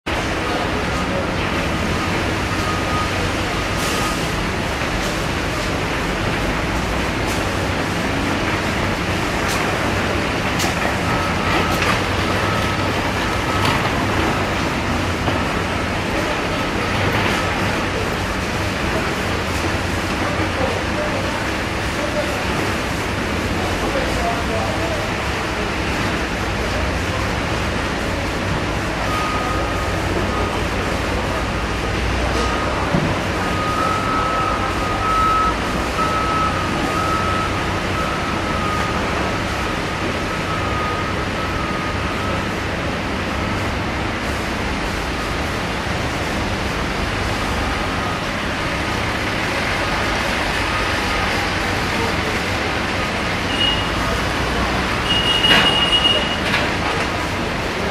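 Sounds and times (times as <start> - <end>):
heavy machinery humming: 0.1 - 57.9
reversing alarm beeping: 0.5 - 6.0, 6.7 - 18.2, 28.9 - 31.4, 32.2 - 42.8, 47.3 - 52.1, 53.4 - 56.7.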